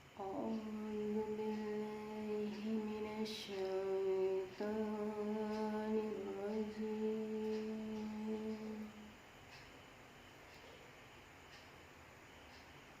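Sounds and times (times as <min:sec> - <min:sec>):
person chanting recitation: 0:00.1 - 0:09.1.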